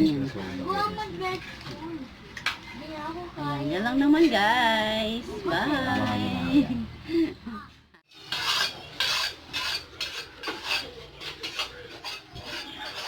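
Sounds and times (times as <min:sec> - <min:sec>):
rough rasping scraping strokes: 0:08.1 - 0:13.0.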